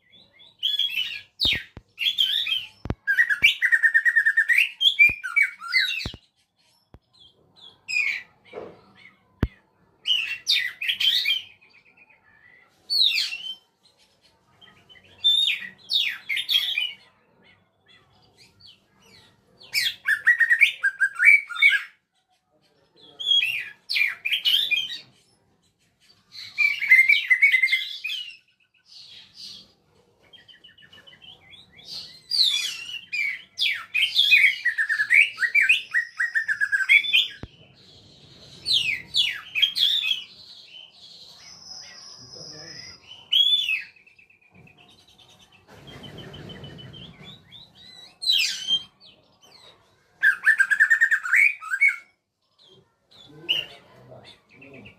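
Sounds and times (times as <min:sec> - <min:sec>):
songbird singing: 0:00.0 - 0:25.5, 0:26.1 - 0:54.9.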